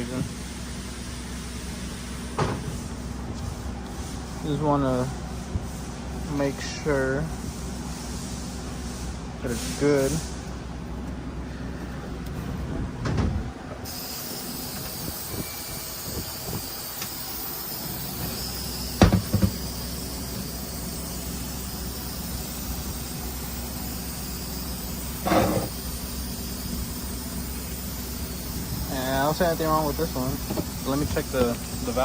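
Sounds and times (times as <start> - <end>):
shop hum and hiss: 0.0 - 32.0
knocks and clunks of metal part: 19.0 - 19.6, 25.2 - 25.7.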